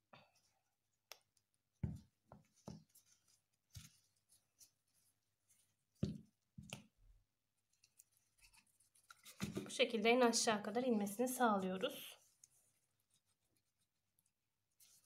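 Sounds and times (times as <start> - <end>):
faint scratching and rustling: 7.7 - 9.8.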